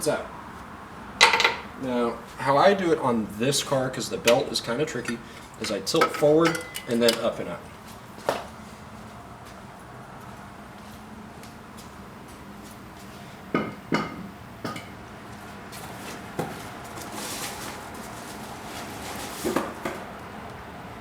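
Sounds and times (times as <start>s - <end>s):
sharp metal clanks and knocks: 1.2s - 1.7s, 4.2s - 7.4s.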